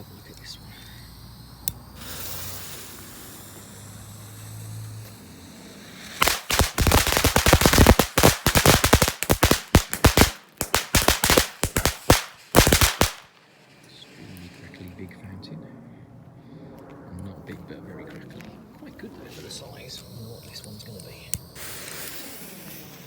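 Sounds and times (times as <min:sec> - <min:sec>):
firework fountain hissing: 0:00.0 - 0:14.9, 0:19.0 - 0:23.0
firework crackling pops: 0:01.6 - 0:15.0, 0:20.7 - 0:23.0.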